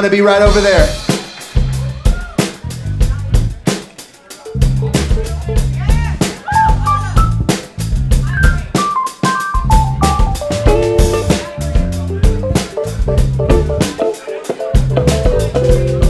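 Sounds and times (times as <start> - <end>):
drum kit beating: 0.0 - 16.0
bass: 0.5 - 3.8, 4.6 - 14.0, 14.8 - 16.0
keyboard melody: 6.5 - 7.5, 8.4 - 16.0.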